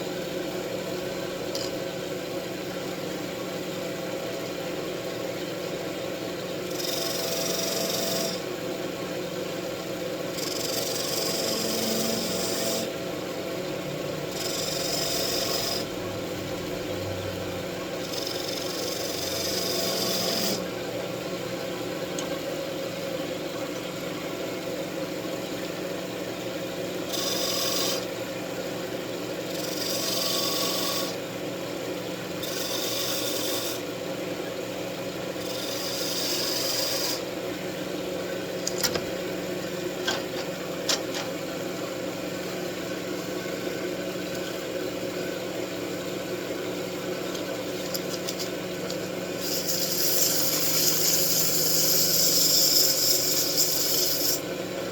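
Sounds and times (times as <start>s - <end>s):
wood lathe humming: 6.6s - 8.5s, 10.3s - 13.0s, 14.2s - 22.3s, 27.0s - 31.2s, 32.4s - 33.9s, 35.2s - 37.4s, 42.8s - 54.6s
tool scraping spinning wood: 14.3s - 15.9s, 18.0s - 20.7s, 47.3s - 54.5s.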